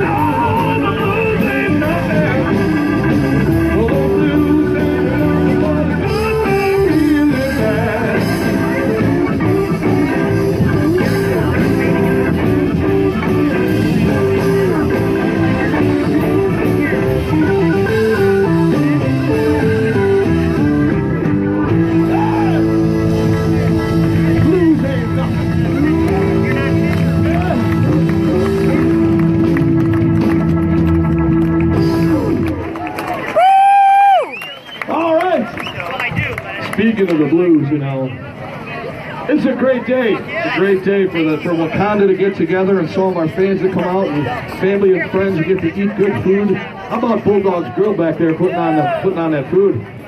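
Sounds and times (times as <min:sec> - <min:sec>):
electric guitar: 0:00.0 - 0:34.3
blues band playing: 0:00.0 - 0:34.4.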